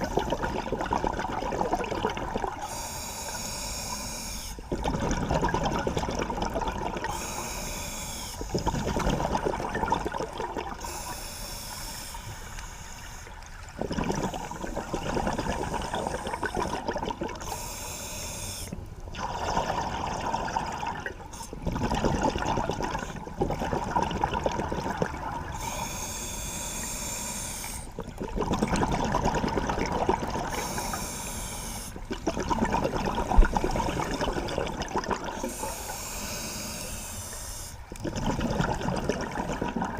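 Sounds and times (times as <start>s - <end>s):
exhaled bubbles rushing: 0.0s - 2.7s, 4.6s - 7.2s, 8.5s - 10.9s, 13.5s - 17.5s, 19.0s - 25.6s, 28.0s - 30.9s, 32.0s - 35.8s, 37.9s - 39.9s
scuba regulator inhalation hiss: 2.6s - 4.6s, 7.1s - 8.8s, 10.8s - 13.4s, 14.4s - 16.8s, 17.4s - 18.8s, 25.5s - 28.0s, 30.5s - 32.0s, 35.4s - 37.9s.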